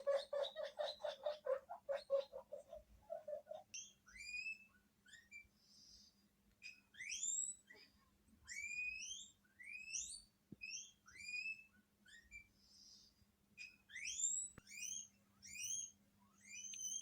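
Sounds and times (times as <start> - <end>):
guinea pigs wheeking: 0.0 - 5.4, 6.6 - 9.9.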